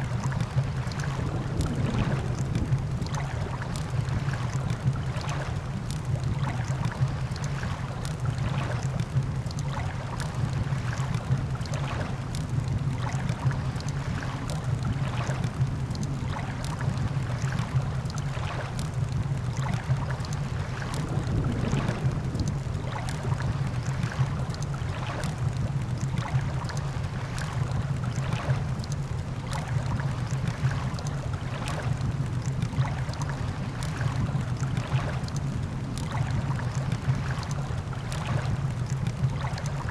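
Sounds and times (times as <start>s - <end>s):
low rumble of surf: 0.0s - 39.9s
campfire crackling and popping: 21.0s - 26.7s.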